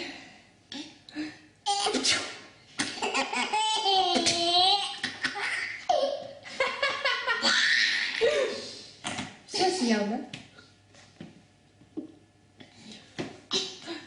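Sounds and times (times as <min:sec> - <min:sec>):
baby laughing: 0:02.8 - 0:08.4.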